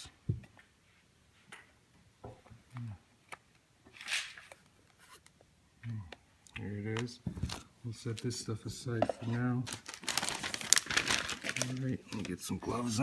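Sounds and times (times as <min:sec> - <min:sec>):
packaging rustle: 0:09.5 - 0:12.6.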